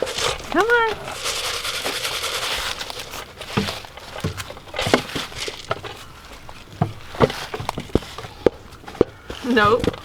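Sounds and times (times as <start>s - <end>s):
footsteps on ground: 0.0s - 6.7s.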